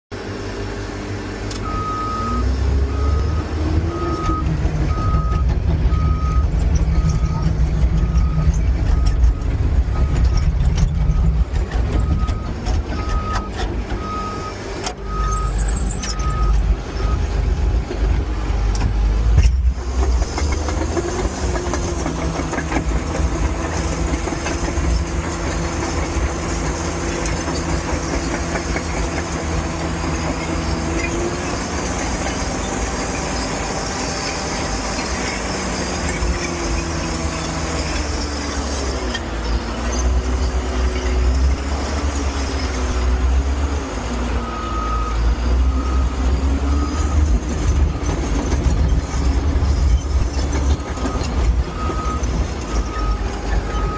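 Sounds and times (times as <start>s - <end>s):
bulldozer diesel engine: 0.1s - 53.9s
reversing alarm beeping: 1.6s - 10.5s, 11.9s - 17.4s, 44.4s - 48.3s, 51.0s - 53.9s.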